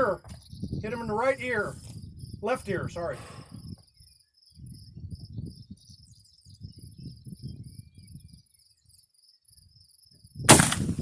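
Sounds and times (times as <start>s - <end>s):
crickets chirping: 0.0s - 11.0s
rifle shot: 10.5s - 11.0s.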